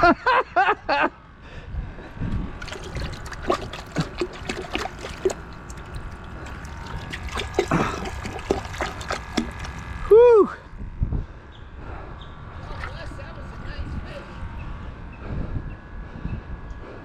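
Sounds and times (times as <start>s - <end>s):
small clicks and drips: 2.6s - 10.0s
water trickling and splashing: 2.6s - 10.1s, 12.6s - 13.2s.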